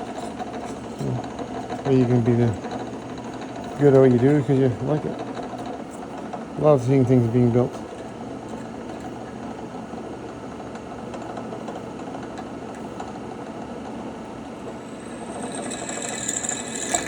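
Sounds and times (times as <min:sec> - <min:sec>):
drill press motor running: 0:00.0 - 0:09.3, 0:11.3 - 0:17.0
high-pitched whine: 0:14.6 - 0:17.0.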